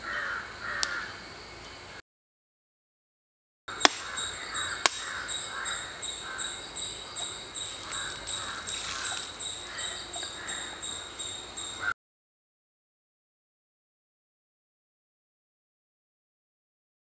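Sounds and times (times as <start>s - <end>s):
crows cawing: 0.0s - 1.2s, 3.7s - 11.0s
high rapidly pulsing chirp: 3.7s - 11.9s.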